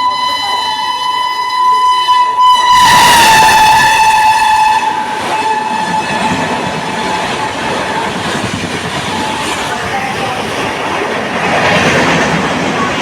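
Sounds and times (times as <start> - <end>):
train horn: 0.0 - 8.2
train wheels clattering on rails: 2.3 - 13.0.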